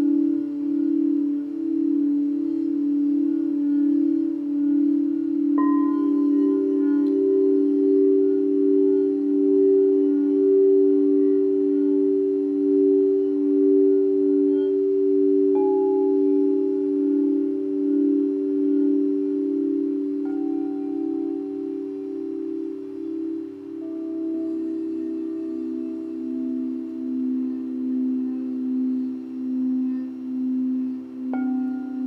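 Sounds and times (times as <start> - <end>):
singing bowls ringing: 0.0 - 32.0.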